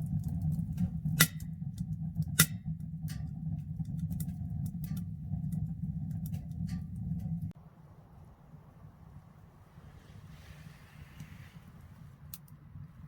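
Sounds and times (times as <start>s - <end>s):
low rumble: 0.0s - 13.0s
wood fire crackling: 0.0s - 13.0s.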